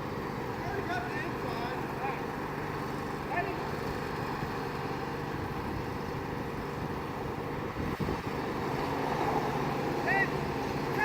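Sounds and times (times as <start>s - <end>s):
lawnmower engines running: 0.0s - 11.0s.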